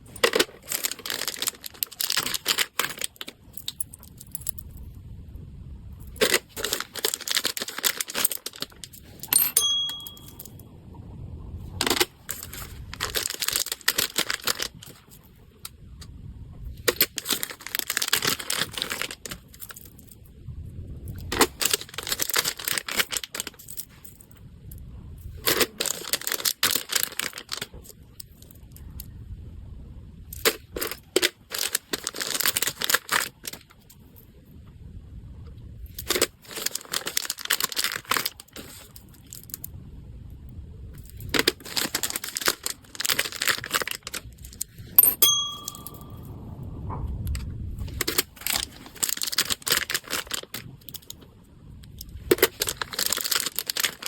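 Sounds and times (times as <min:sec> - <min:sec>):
packaging crinkling and tearing: 0:00.0 - 0:03.4, 0:06.2 - 0:09.2, 0:11.8 - 0:15.7, 0:16.8 - 0:19.9, 0:21.2 - 0:23.7, 0:25.3 - 0:28.4, 0:30.4 - 0:33.8, 0:36.0 - 0:39.6, 0:41.2 - 0:44.8, 0:47.8 - 0:51.2, 0:52.0 - 0:54.0
brief ringing tone: 0:09.6 - 0:10.5, 0:45.2 - 0:46.3.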